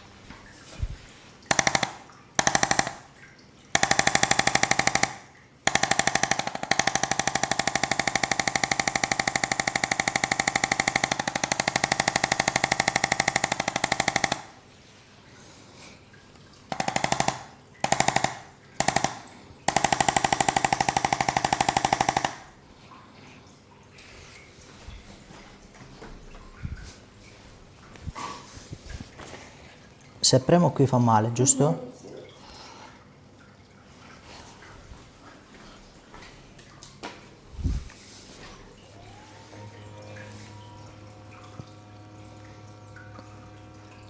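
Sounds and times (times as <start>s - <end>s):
massage gun hammering buzz: 1.5s - 3.2s, 3.8s - 14.7s, 16.7s - 22.6s, 38.8s - 44.0s.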